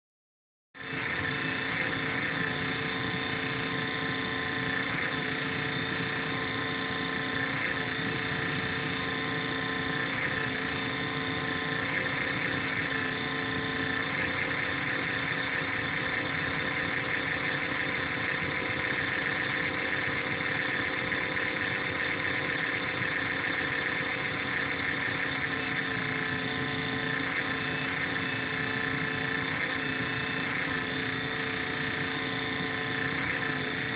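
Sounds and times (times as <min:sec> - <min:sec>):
laptop cooling fan whining: 0:00.8 - 0:33.9.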